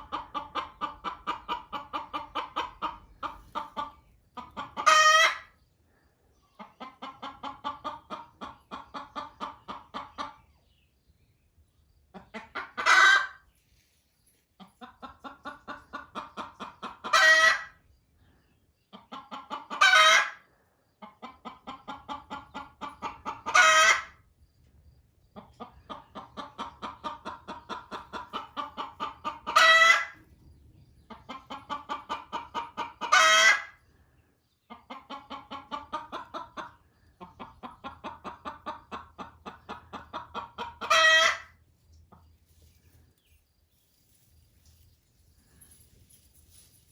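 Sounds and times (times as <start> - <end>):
hen cackling: 0.0 - 5.6, 12.1 - 13.4, 14.8 - 17.8, 19.0 - 20.4, 21.0 - 24.2, 25.4 - 30.2, 31.1 - 33.8, 34.7 - 41.6.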